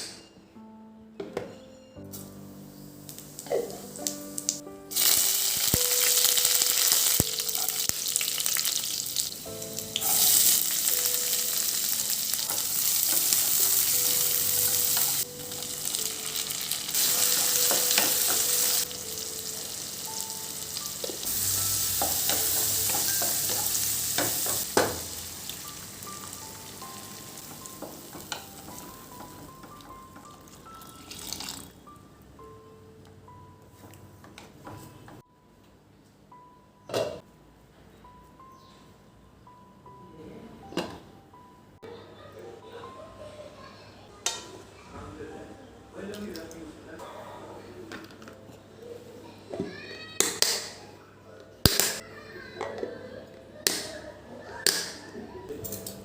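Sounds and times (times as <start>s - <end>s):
soft background music: 0.0s - 56.0s
food sizzling in hot oil: 3.0s - 29.4s, 30.3s - 31.7s.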